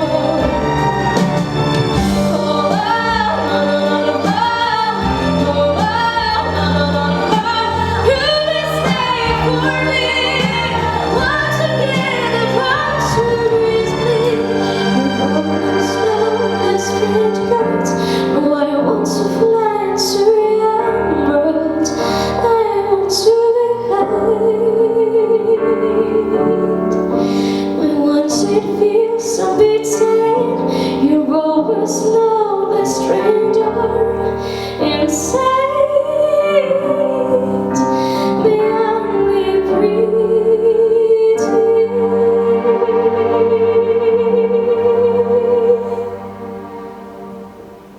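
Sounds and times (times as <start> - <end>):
musical backing track: 0.0 - 47.9.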